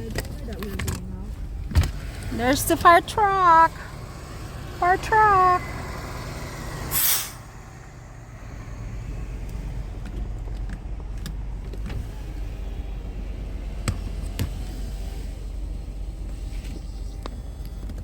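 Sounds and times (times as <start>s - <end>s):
fire truck engine rumbling: 0.0s - 18.0s
loud hiss: 6.9s - 7.5s.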